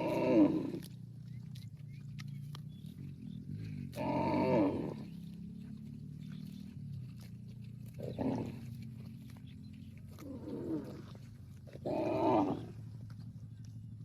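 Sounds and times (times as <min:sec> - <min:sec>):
cattle mooing: 0:00.0 - 0:00.9, 0:03.8 - 0:05.2, 0:08.0 - 0:08.7, 0:10.2 - 0:11.1, 0:11.8 - 0:12.8.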